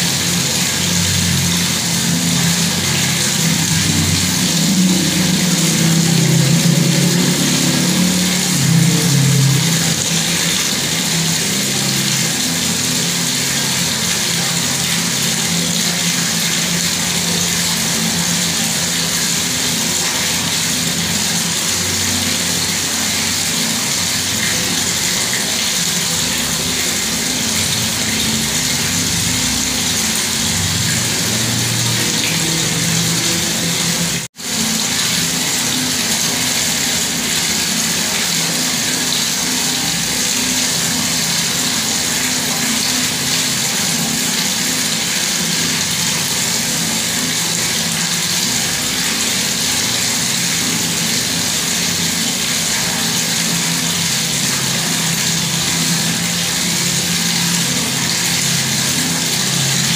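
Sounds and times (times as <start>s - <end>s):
tap running water: 0.0s - 59.9s.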